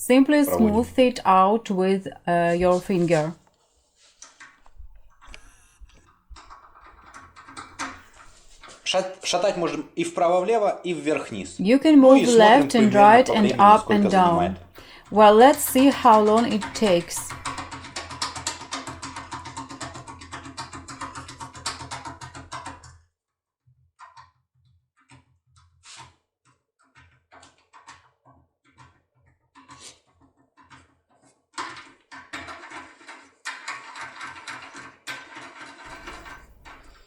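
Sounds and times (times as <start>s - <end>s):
background music: 0.0s - 1.2s, 11.2s - 17.4s
metallic clicks and scraping in a lock: 31.6s - 37.0s.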